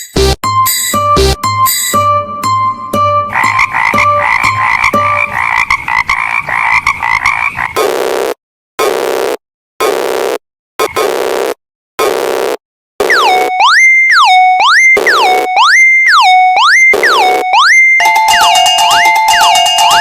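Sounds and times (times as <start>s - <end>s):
tones sliding up and down: 7.8s - 20.0s
steady high tone: 18.0s - 20.0s.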